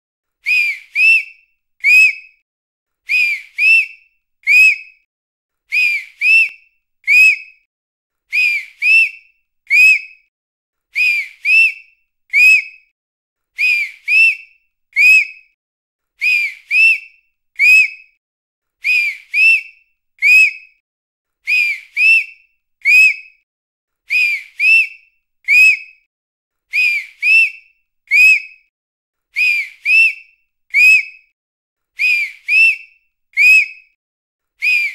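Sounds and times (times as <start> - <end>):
high-pitched whistle blasts: 0.5 - 2.4, 5.8 - 7.6, 26.8 - 28.7, 29.4 - 31.3, 32.0 - 34.0, 34.6 - 34.9.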